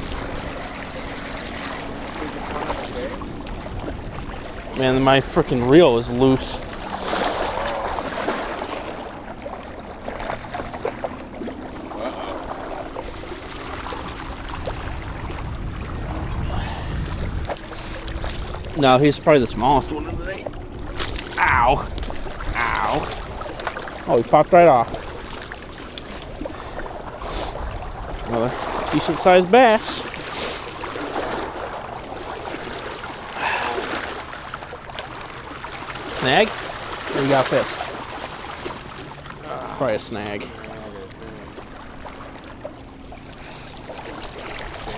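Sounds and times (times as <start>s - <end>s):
wind rumbling on microphone: 13.9s - 23.5s, 26.3s - 29.1s
wind noise on microphone: 14.4s - 18.7s.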